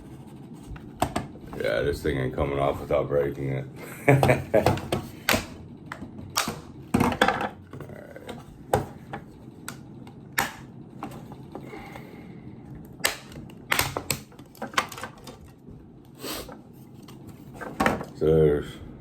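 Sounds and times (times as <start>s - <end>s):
plastic cracking and snapping: 12.8s - 15.6s.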